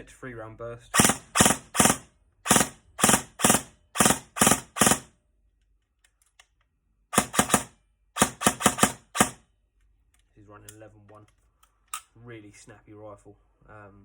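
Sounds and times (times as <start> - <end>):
airsoft rifle firing bursts: 1.0 - 5.1, 7.2 - 9.4.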